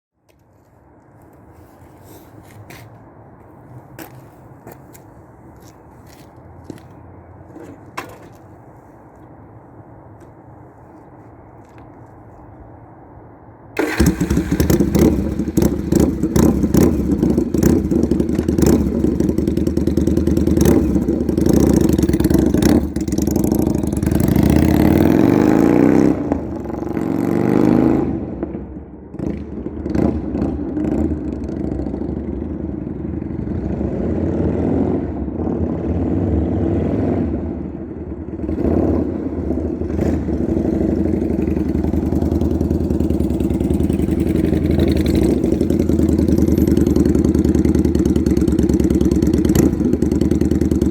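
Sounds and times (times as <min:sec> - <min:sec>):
motorcycle engine revving: 0:13.8 - 0:28.2, 0:38.4 - 0:50.9.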